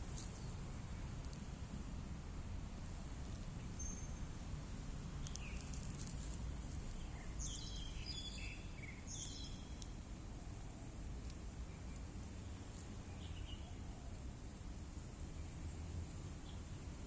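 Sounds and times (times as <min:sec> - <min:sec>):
small birds chirping: 0:05.2 - 0:14.3.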